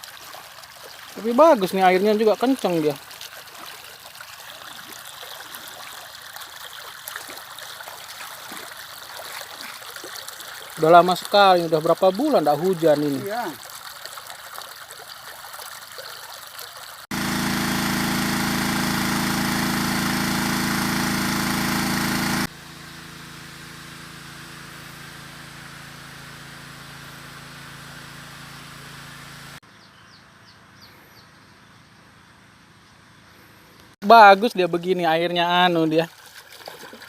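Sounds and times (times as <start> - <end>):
water gushing: 0.0 - 22.5, 34.2 - 37.0
petrol engine running: 17.1 - 29.6.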